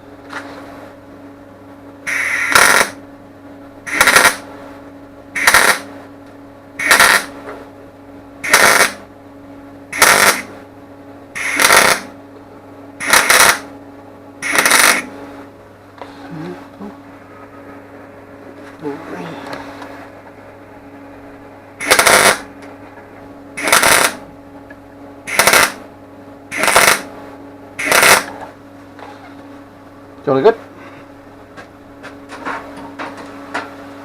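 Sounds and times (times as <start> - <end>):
steady low hum: 0.0 - 34.0
electric welder crackling: 2.1 - 3.0, 3.9 - 4.5, 5.4 - 5.9, 6.8 - 7.4, 8.4 - 9.1, 9.9 - 10.6, 11.4 - 12.2, 13.0 - 13.7, 14.4 - 15.1, 21.8 - 22.7, 23.6 - 24.3, 25.2 - 25.8, 26.5 - 27.1, 27.8 - 28.4.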